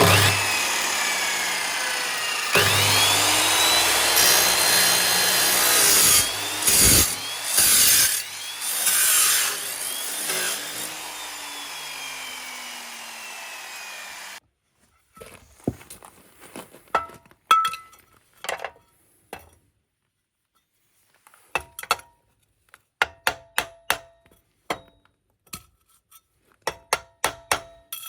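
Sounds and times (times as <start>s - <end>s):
angle grinder grinding metal: 0.0s - 14.4s.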